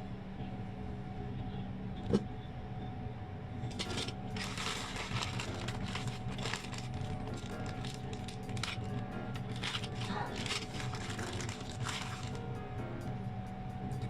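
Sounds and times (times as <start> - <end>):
steady low hum: 0.0 - 14.0
plastic packaging crinkling: 3.7 - 12.7.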